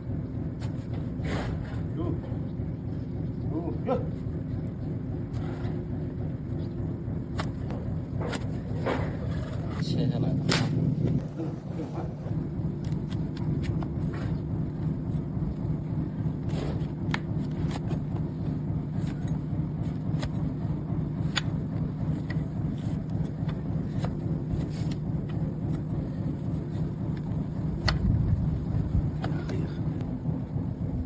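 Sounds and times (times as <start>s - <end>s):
low engine-like hum: 0.0s - 31.0s
knife scraping hoof: 21.2s - 26.9s.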